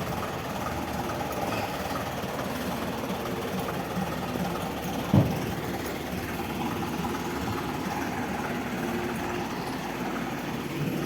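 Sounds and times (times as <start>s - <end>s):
construction machine engine running: 0.0s - 11.0s
loud clunk: 5.0s - 5.6s.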